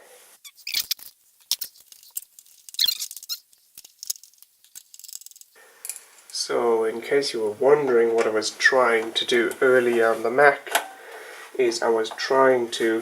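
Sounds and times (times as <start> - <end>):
screwdriver squeaks and clicks: 0.4 - 5.6.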